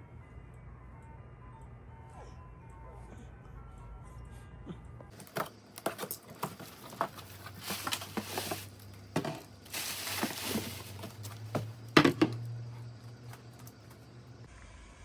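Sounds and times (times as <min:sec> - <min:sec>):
packaging clicks and knocks: 0:05.1 - 0:12.4
packaging rustling: 0:05.2 - 0:12.4.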